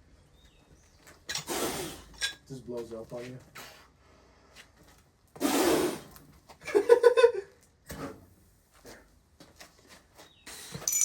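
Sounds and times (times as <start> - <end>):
man laughing: 6.6 - 7.6.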